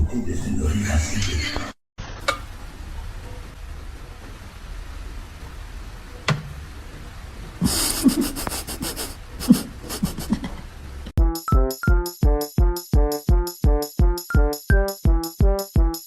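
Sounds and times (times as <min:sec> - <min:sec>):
animal breathy puffs: 0:07.7 - 0:10.4
electronic music with steady beat: 0:11.2 - 0:16.0.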